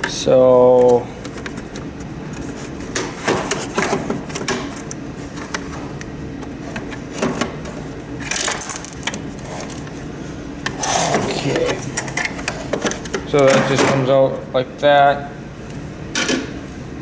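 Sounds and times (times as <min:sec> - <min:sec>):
plastic parts clicking and knocking: 0:08.2 - 0:09.2.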